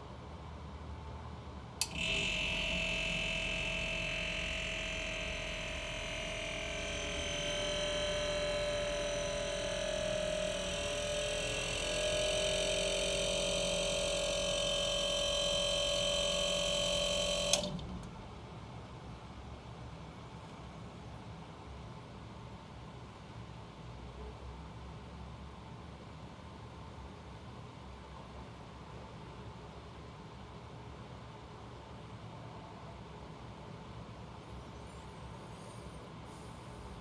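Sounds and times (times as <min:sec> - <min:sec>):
compressor relay click: 0:01.8 - 0:18.4
refrigerator compressor whine: 0:01.8 - 0:21.0, 0:34.5 - 0:37.0.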